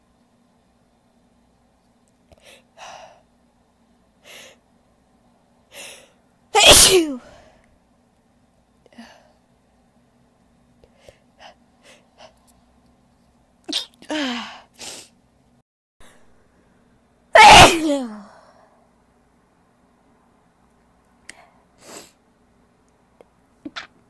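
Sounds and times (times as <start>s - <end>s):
woman sneezing: 6.6s - 7.4s, 17.4s - 18.3s
woman sniffing: 21.8s - 22.2s.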